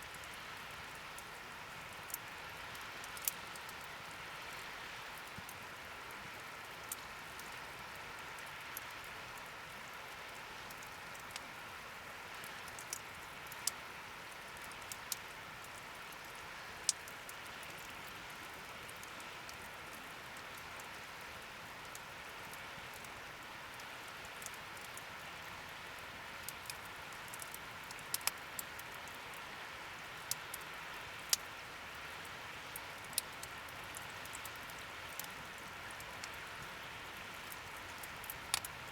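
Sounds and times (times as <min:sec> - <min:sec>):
fire crackling and popping: 0:01.2 - 0:04.2, 0:14.5 - 0:17.9, 0:23.7 - 0:25.0, 0:26.4 - 0:29.2, 0:32.7 - 0:38.9.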